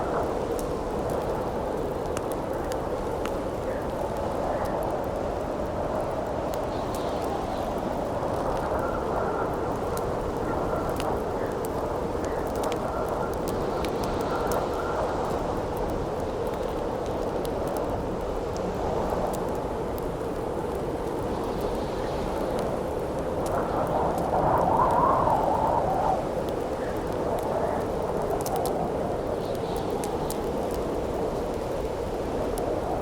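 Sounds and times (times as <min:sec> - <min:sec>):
campfire crackling and popping: 0:00.0 - 0:33.0
howling wind: 0:00.0 - 0:33.0
whistling wind tone: 0:23.4 - 0:30.7.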